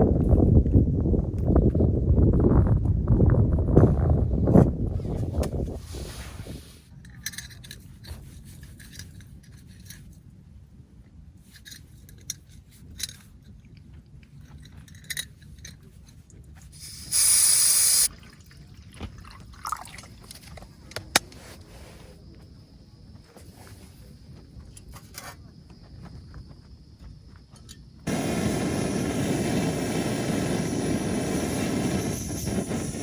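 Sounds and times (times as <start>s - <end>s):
gear clicks clinks and scrapes: 7.0s - 10.2s
loud hiss: 16.8s - 18.1s, 28.1s - 33.0s.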